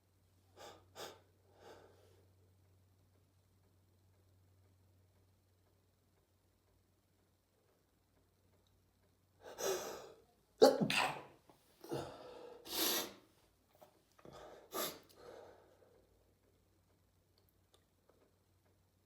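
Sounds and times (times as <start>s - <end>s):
person sneezing: 10.6s - 13.2s
breathy in-breath: 14.2s - 15.9s.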